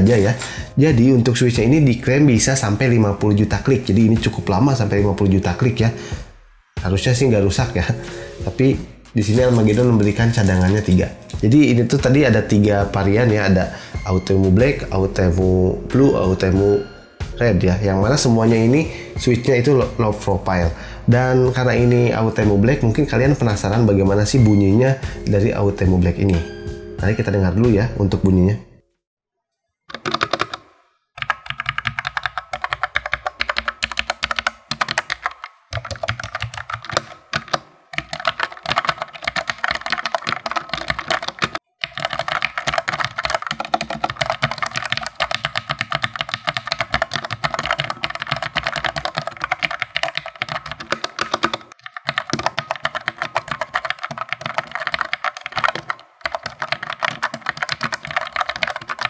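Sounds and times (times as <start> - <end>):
fast typing on mechanical keyboard: 9.3 - 12.1, 29.9 - 59.0.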